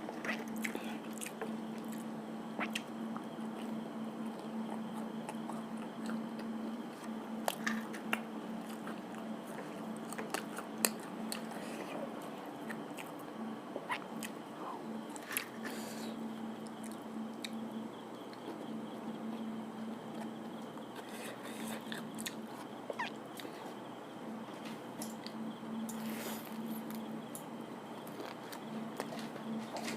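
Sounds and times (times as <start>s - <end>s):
steady low hum: 0.0s - 29.9s
person chewing food: 0.1s - 12.0s, 12.6s - 13.2s, 20.1s - 23.7s.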